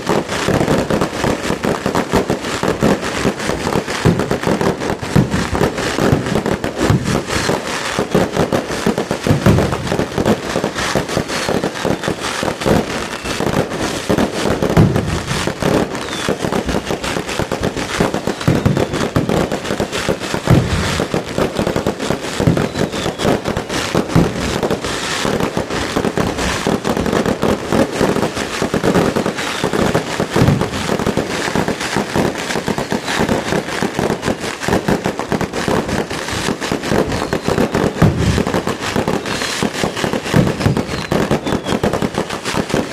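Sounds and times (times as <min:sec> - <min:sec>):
fireworks bangs and crackling: 0:00.0 - 0:42.9.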